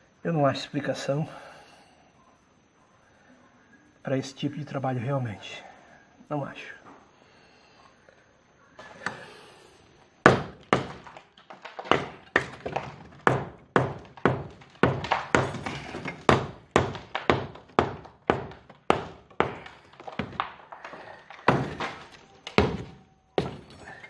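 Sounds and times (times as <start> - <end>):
hammer blows on masonry: 11.8 - 20.4.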